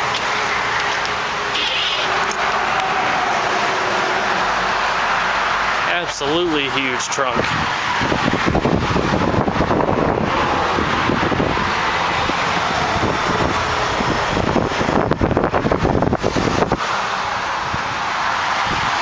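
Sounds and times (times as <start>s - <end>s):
highway traffic rush: 0.0s - 19.0s
wind buffeting microphone: 7.3s - 19.0s.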